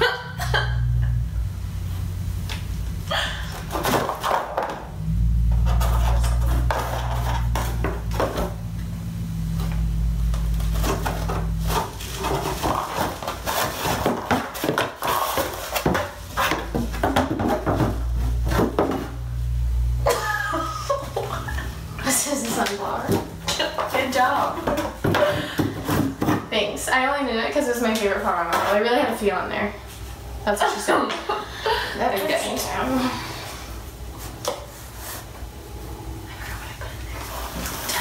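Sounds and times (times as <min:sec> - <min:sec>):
low handling rumble: 0:00.4 - 0:03.8, 0:04.8 - 0:13.5, 0:16.2 - 0:25.0.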